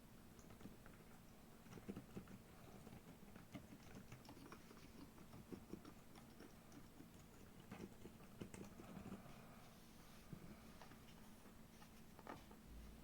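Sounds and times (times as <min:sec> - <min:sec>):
soft muted keyboard typing: 0:00.3 - 0:09.4.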